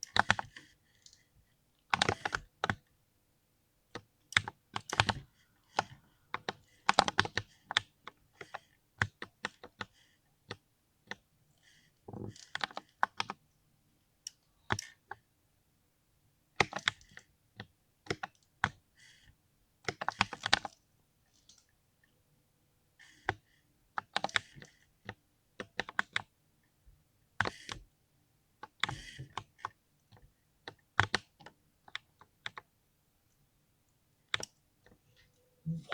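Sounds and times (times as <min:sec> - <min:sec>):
mechanical keyboard typing: 0:01.9 - 0:02.8.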